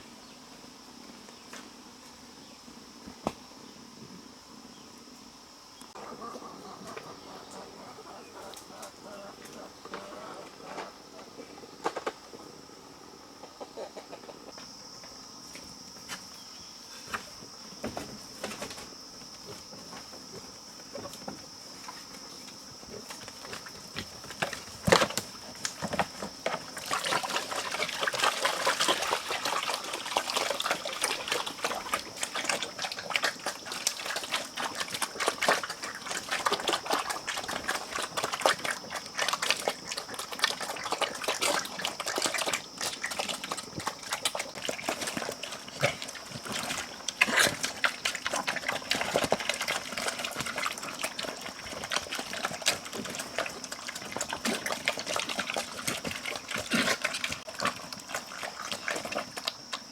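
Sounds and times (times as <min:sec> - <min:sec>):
pigs chomping and slurping: 0:23.0 - 0:59.9.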